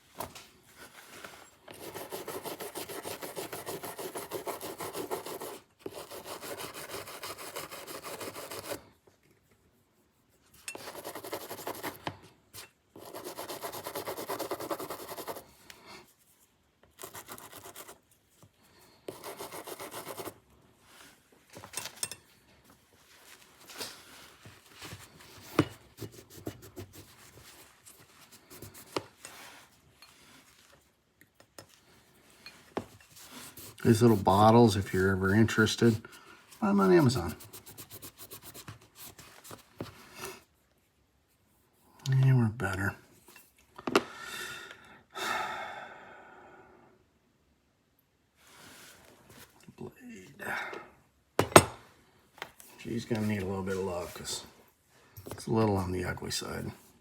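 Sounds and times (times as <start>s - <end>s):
rapid scrubbing by hand: 1.8s - 8.8s, 10.8s - 12.0s, 13.0s - 15.5s, 19.1s - 20.4s, 33.2s - 36.0s, 36.6s - 38.7s.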